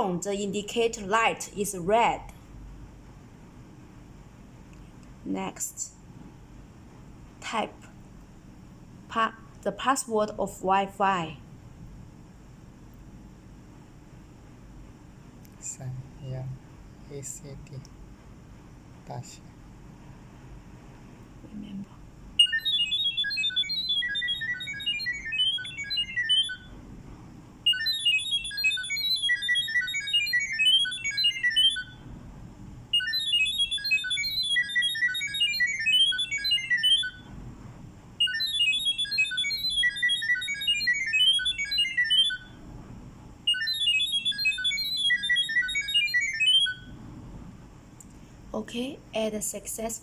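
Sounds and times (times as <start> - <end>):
rapid high electronic beeps: 22.4 - 26.7, 27.7 - 32.0, 33.0 - 37.3, 38.2 - 42.6, 43.5 - 46.9.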